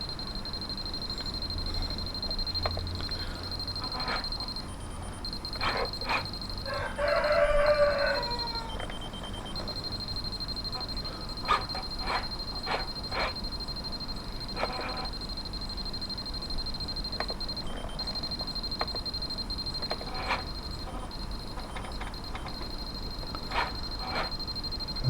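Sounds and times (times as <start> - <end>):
steady high-pitched tone: 0.0 - 25.0
short rooster calls: 6.6 - 8.8
rooster crowing: 6.6 - 8.9.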